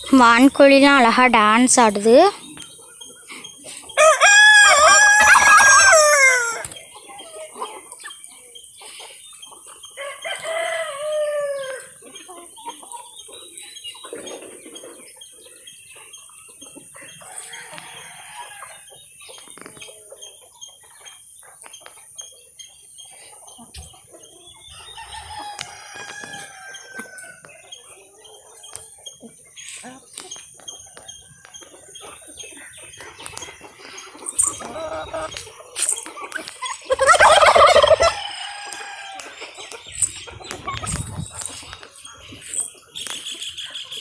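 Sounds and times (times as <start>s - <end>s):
poultry calls and clucks: 1.1s - 44.0s
rooster crowing: 4.0s - 6.7s, 10.0s - 11.8s, 24.9s - 27.4s, 36.9s - 39.4s.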